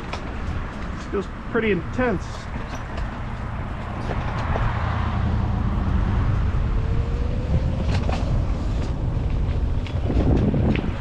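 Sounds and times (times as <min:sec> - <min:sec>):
bike clicks and knocks: 0:00.0 - 0:01.2, 0:02.3 - 0:04.8, 0:07.7 - 0:11.0
wind and ride rumble: 0:00.0 - 0:11.0.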